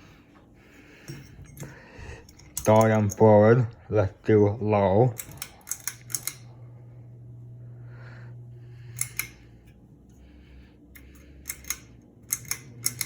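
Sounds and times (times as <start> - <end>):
ceiling fan motor humming: 0.0 - 13.0
pull-chain switch clicks: 2.3 - 3.2, 5.1 - 6.5, 8.9 - 9.4, 11.0 - 13.0.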